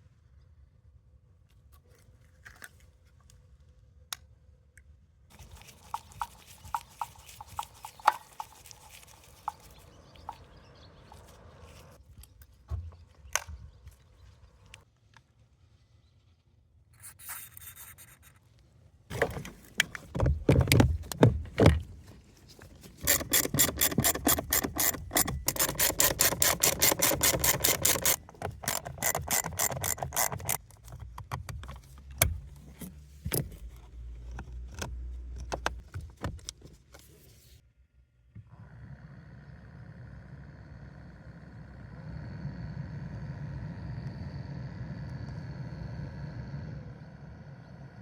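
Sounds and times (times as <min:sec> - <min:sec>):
blower fan motor scraping: 0:19.1 - 0:30.6.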